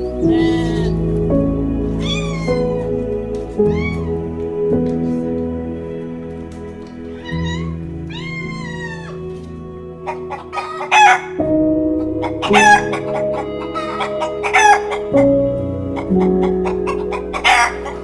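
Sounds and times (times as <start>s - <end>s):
soft background music: 0.0s - 18.0s
long pitched animal call: 0.2s - 1.0s, 1.9s - 3.0s, 7.2s - 9.4s, 10.0s - 18.0s.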